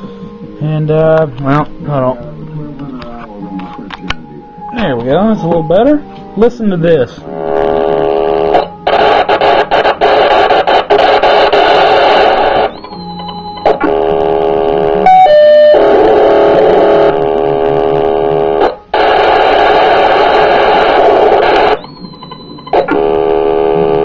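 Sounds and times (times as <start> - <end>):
harsh buzzing radio signal with tones: 7.1 - 24.0
short high beeps: 12.7 - 13.7, 21.8 - 22.8.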